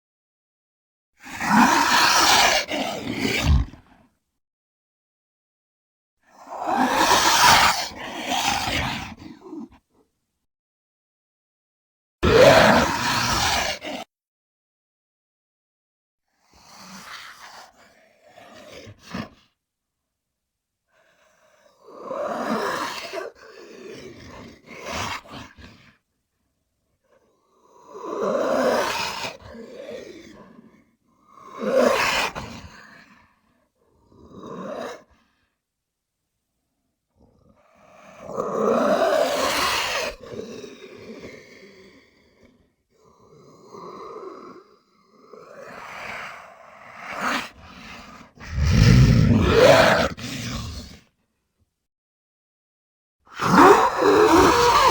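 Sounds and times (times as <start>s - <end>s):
creature calls: 48.4s - 50.9s, 53.5s - 54.9s.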